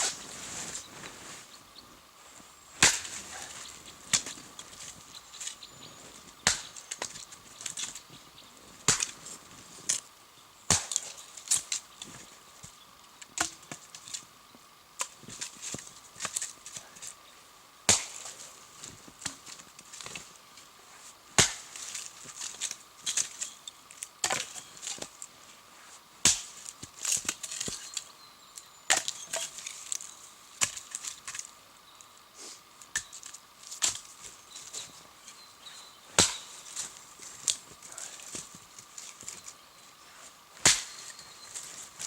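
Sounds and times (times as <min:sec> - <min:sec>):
dry wood chopped and snapping: 0:02.8 - 0:04.8, 0:06.4 - 0:08.0, 0:08.8 - 0:09.2, 0:10.7 - 0:12.2, 0:13.3 - 0:14.2, 0:15.0 - 0:16.8, 0:17.9 - 0:18.4, 0:21.4 - 0:23.5, 0:24.2 - 0:25.1, 0:26.2 - 0:28.0, 0:28.9 - 0:30.0, 0:30.6 - 0:31.4, 0:32.9 - 0:34.1, 0:36.2 - 0:36.8, 0:40.6 - 0:41.7.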